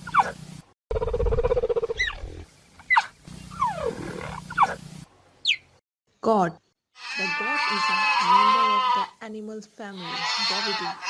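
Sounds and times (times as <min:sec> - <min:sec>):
cheetah calls: 0:02.8 - 0:04.8.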